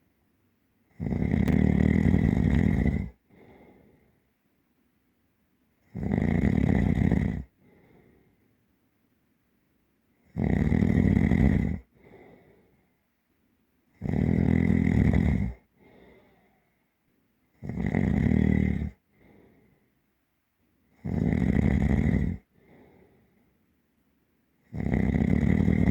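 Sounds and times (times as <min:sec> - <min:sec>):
deep heavy snoring: 0:00.9 - 0:03.7, 0:05.9 - 0:07.5, 0:10.3 - 0:12.3, 0:14.0 - 0:16.3, 0:17.6 - 0:19.0, 0:21.0 - 0:22.5, 0:24.7 - 0:25.9
soft breath out: 0:03.0 - 0:04.3, 0:07.6 - 0:08.6, 0:11.9 - 0:13.0, 0:15.7 - 0:16.9, 0:19.0 - 0:20.0, 0:22.5 - 0:23.6.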